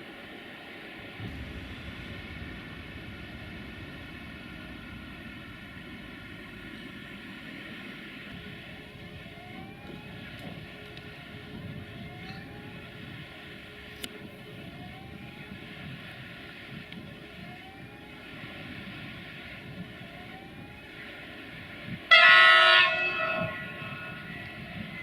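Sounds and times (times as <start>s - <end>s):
electric locomotive humming: 0.0s - 25.0s
faint rising whine: 0.9s - 22.0s
locomotive horn blast: 22.1s - 25.0s.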